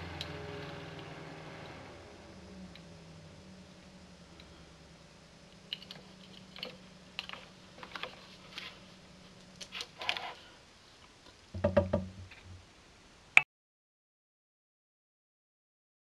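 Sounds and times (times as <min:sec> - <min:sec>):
faint steady hum: 0:00.0 - 0:13.4
burst of knocks: 0:11.6 - 0:12.3.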